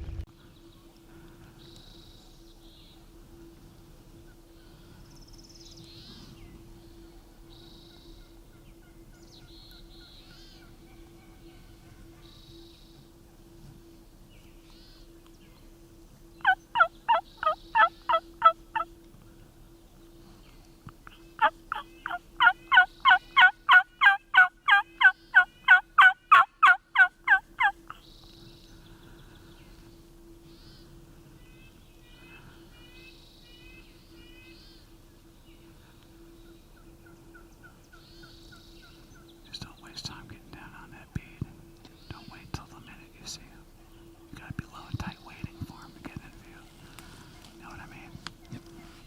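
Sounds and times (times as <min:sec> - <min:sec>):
turkey yelps: 0:16.4 - 0:18.9, 0:21.4 - 0:27.7.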